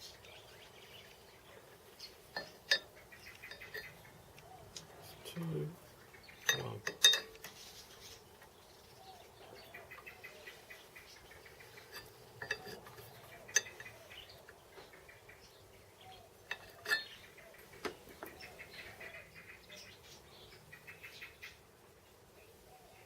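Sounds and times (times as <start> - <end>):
metal tools clinking: 2.3 - 4.0, 6.4 - 7.6, 11.8 - 14.6, 16.4 - 17.2.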